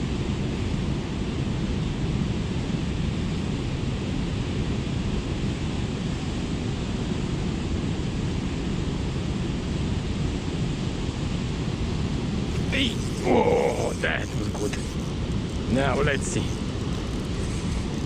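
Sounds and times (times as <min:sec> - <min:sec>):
wind rumbling on microphone: 0:00.0 - 0:18.0.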